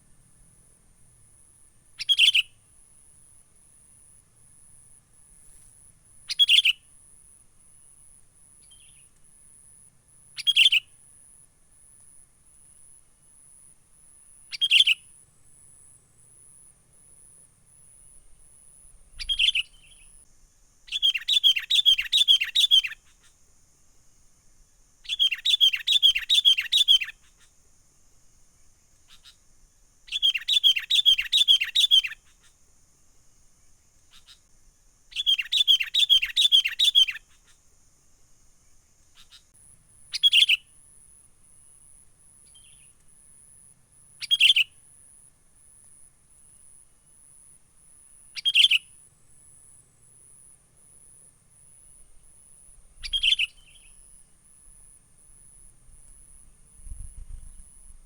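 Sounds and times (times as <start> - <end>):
faint high hiss: 0.0 - 58.0
bulbul calling: 2.0 - 2.6, 6.2 - 6.9, 10.4 - 11.0, 14.5 - 15.1, 19.1 - 20.2, 20.9 - 23.0, 25.0 - 27.5, 30.1 - 32.6, 35.1 - 37.5, 39.2 - 40.7, 44.1 - 44.8, 48.3 - 49.0, 53.0 - 54.2.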